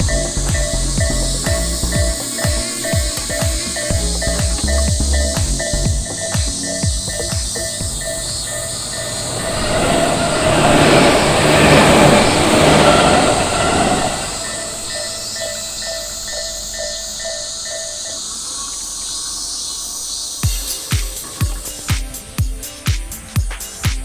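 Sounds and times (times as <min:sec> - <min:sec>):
train rumbling past: 0:00.0 - 0:18.2
crossing warning bell ringing: 0:00.0 - 0:18.8.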